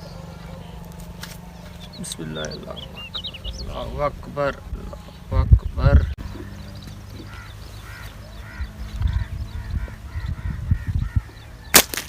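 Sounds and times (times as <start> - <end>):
bird giving harsh calls: 1.7 - 11.9.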